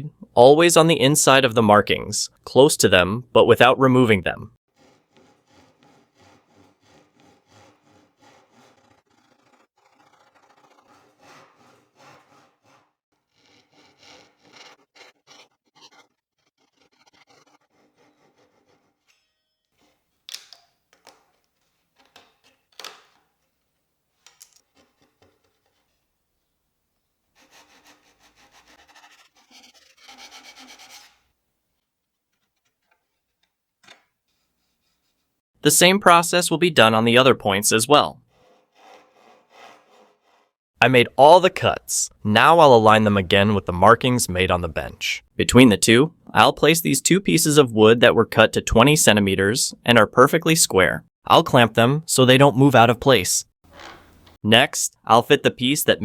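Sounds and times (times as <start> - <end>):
hand saw cutting wood: 4.7 - 20.1, 27.4 - 31.3, 38.3 - 40.6.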